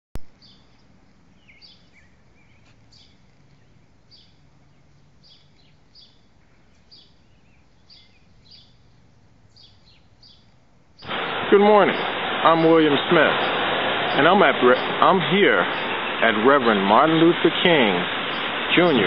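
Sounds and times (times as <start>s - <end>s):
low background hum: 0.2s - 19.0s
faint bird chirps: 0.3s - 11.4s.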